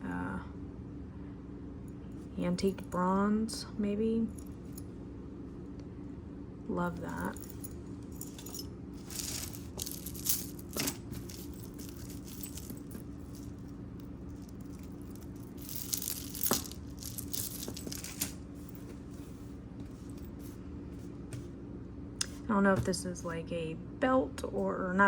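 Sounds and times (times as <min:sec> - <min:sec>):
low background hum: 0:00.0 - 0:25.0
jewelry clinking and rattling: 0:07.0 - 0:19.0.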